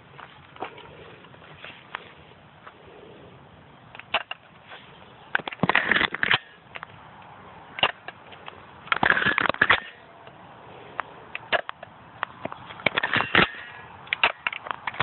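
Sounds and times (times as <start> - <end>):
plastic toy blaster clicks and rattles: 8.9 - 10.0.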